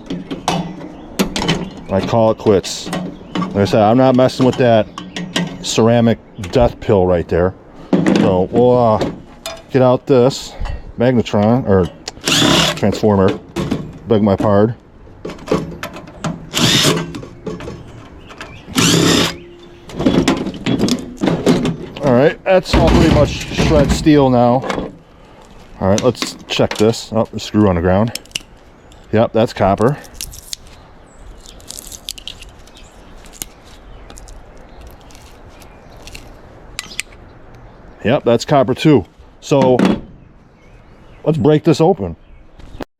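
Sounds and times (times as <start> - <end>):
wire cutters clicking: 12.0 - 12.9, 16.5 - 17.2, 18.7 - 19.4
cordless power drill running: 12.2 - 12.8, 16.5 - 17.0, 18.7 - 19.4
wire leads clicking and scratching: 28.0 - 37.2.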